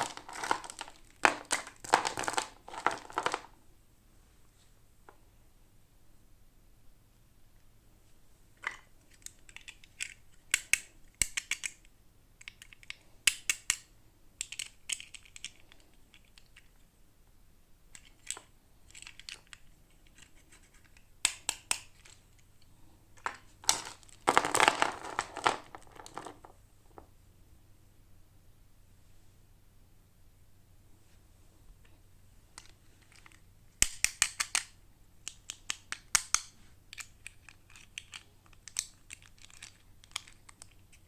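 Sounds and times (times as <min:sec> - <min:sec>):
scratches and clicks: 0:18.0 - 0:22.2, 0:35.3 - 0:41.0.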